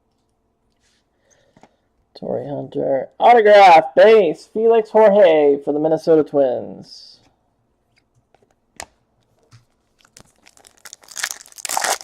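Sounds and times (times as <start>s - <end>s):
foil wrapper tearing and crinkling: 10.0s - 12.0s.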